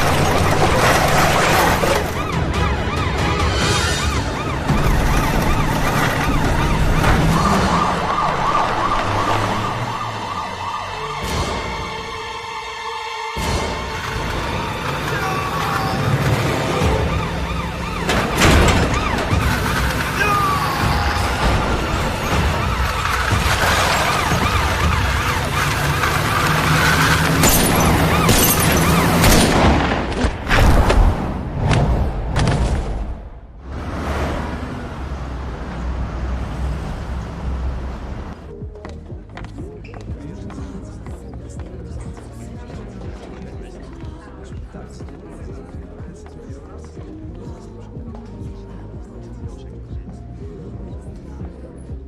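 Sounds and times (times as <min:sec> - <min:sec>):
emergency siren yelping: 0:01.4 - 0:12.7, 0:14.1 - 0:29.2
vehicle rumble: 0:13.4 - 0:52.0.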